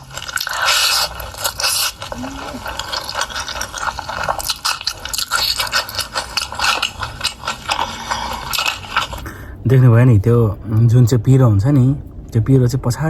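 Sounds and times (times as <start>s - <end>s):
wet chewing and smacking: 0.0s - 9.4s.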